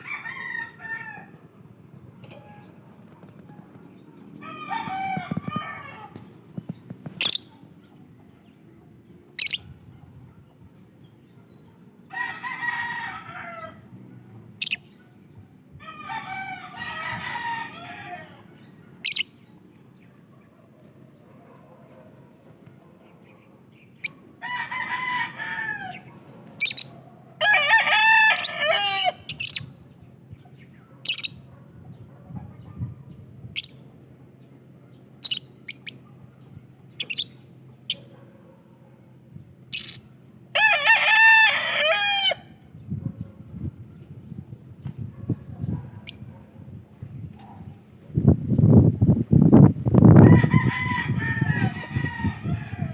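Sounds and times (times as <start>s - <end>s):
birds chirping shrilly: 3.8s - 7.9s, 9.4s - 9.8s, 14.5s - 15.0s, 15.8s - 20.1s, 23.8s - 30.0s, 30.7s - 31.5s, 33.6s - 34.1s, 35.1s - 38.1s, 39.6s - 42.6s.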